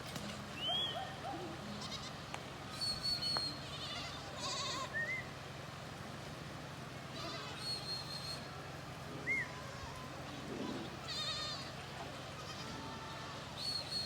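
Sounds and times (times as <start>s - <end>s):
farm animals bleating: 1.6s - 2.2s, 3.5s - 5.2s, 7.1s - 8.0s, 9.2s - 14.0s.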